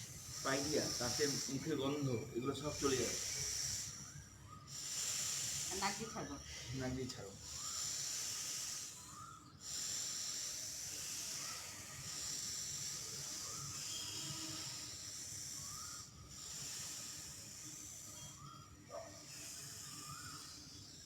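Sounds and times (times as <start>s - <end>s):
hissing breaths through teeth: 0.0s - 21.0s.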